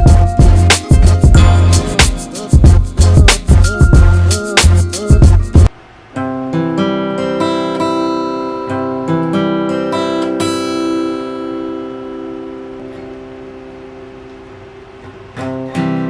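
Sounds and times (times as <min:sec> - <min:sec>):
background music with heavy beat: 0:00.0 - 0:05.7
acoustic guitar picked notes: 0:00.0 - 0:16.0.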